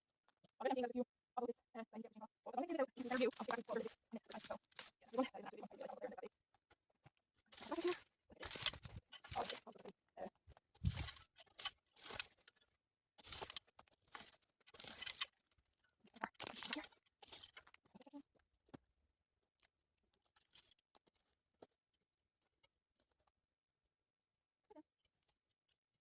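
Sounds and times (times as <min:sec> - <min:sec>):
twigs and leaves crunching: 0:02.6 - 0:06.2, 0:07.4 - 0:15.5, 0:16.1 - 0:17.8.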